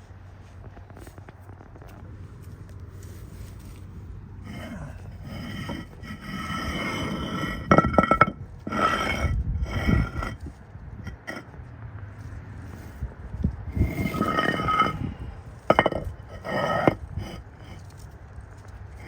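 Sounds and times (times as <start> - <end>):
metal scraping and clinking: 4.5 - 11.5, 13.7 - 19.0.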